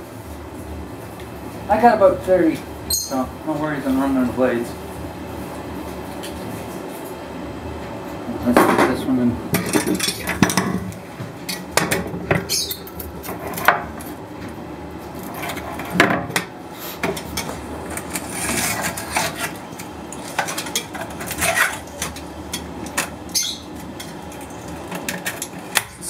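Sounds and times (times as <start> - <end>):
razor blade scraping glass: 17.9 - 19.6, 20.5 - 22.1.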